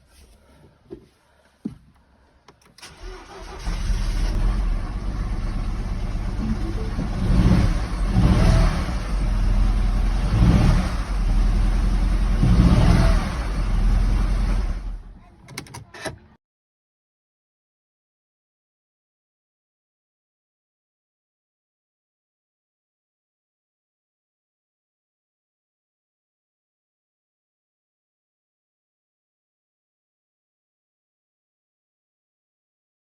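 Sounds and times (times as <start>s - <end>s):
car engine cranking and starting: 2.5s - 16.4s
car engine idling and revving: 2.9s - 16.2s.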